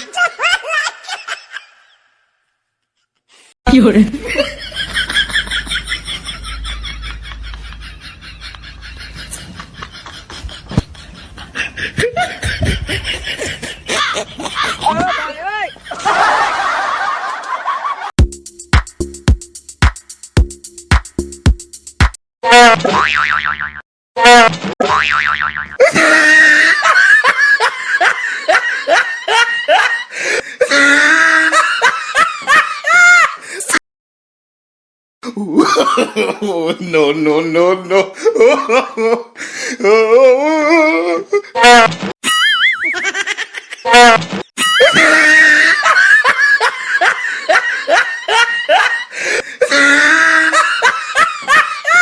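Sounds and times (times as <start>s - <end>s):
people laughing heartily: 0.0s - 2.0s, 4.1s - 18.1s, 25.8s - 33.8s, 37.9s - 39.4s, 41.3s - 52.0s.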